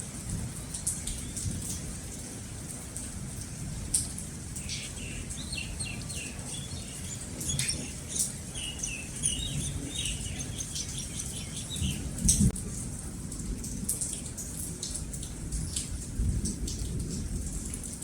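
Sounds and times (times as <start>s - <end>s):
steady rain: 0.0s - 18.0s
bird chirping: 4.6s - 12.5s.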